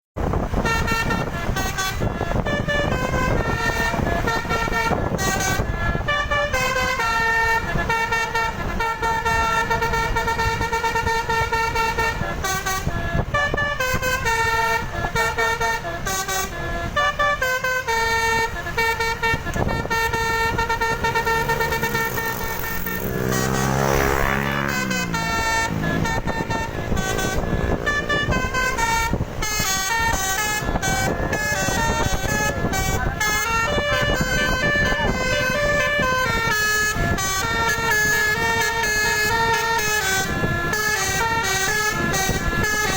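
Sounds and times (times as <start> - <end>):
wavering siren-like glide: 0.2 - 17.3, 17.9 - 42.9
musical bus air horn: 0.2 - 42.9.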